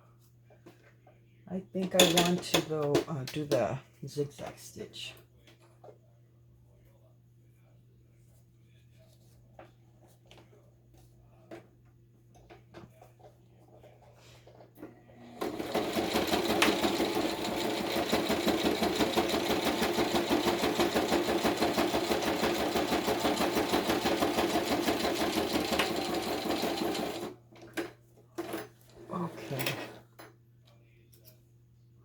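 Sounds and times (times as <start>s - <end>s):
electric sewing machine running: 15.1s - 27.4s.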